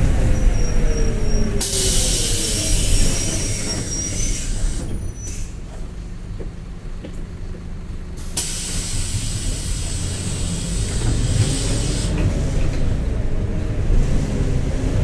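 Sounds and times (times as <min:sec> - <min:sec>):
diesel bus engine running: 0:00.0 - 0:15.0
compressed air hiss: 0:01.6 - 0:03.6, 0:08.2 - 0:12.1.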